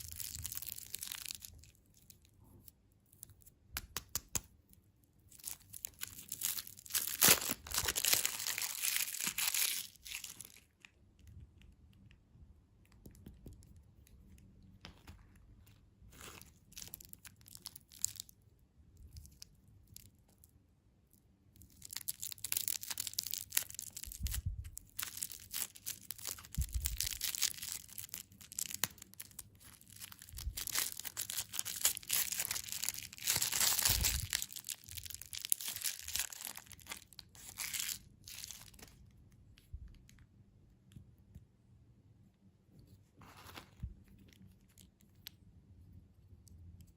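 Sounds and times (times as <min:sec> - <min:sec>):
plastic wrappers crinkling: 0:00.0 - 0:02.2, 0:05.3 - 0:10.9, 0:16.1 - 0:18.3, 0:21.6 - 0:39.0.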